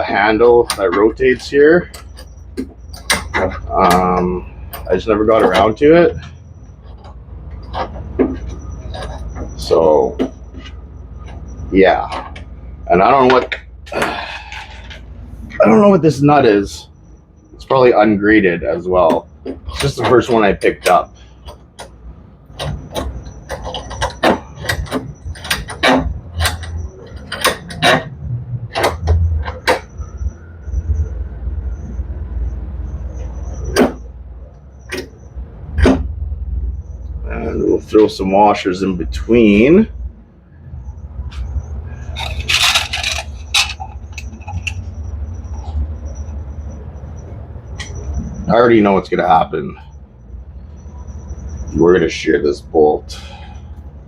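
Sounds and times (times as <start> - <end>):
metallic clicks of nut and bolt: 0.6 - 4.1, 22.5 - 28.1, 41.4 - 44.9
metal washers clinking: 0.6 - 9.7, 41.9 - 45.7
metallic rattle: 0.6 - 9.8, 41.9 - 45.8
low steady hum: 34.2 - 54.0.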